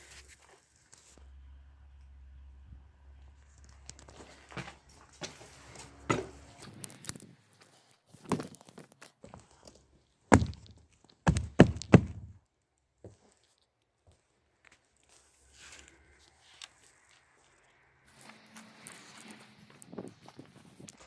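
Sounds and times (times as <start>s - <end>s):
dull thumps and knocks: 10.3s - 12.4s.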